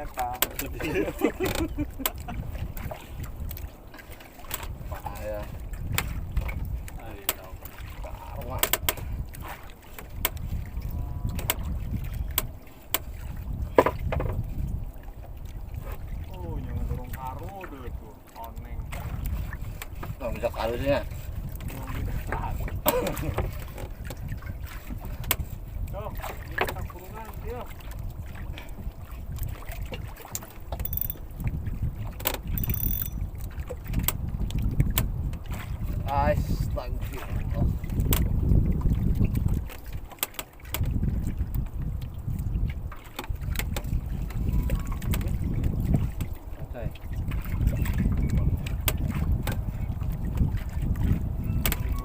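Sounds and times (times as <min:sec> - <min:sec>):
wind rumble on microphone: 0:00.0 - 0:52.0
sharp clicks and knocks: 0:30.4 - 0:31.2.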